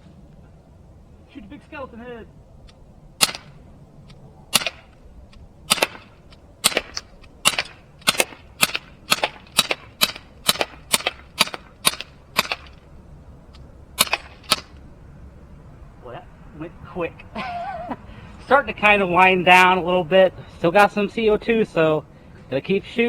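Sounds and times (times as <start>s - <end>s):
bb pistol shots popping: 3.2s - 3.7s, 4.5s - 5.0s, 5.7s - 12.9s, 14.0s - 14.8s.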